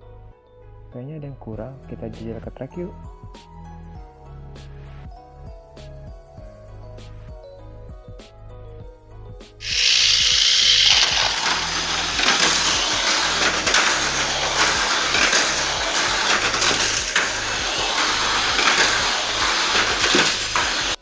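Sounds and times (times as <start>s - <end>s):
toy car motor whine: 9.6s - 21.0s.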